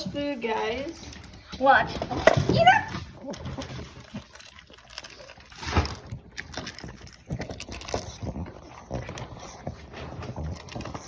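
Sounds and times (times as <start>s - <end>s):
dog crunching and chewing food: 0.0s - 11.0s.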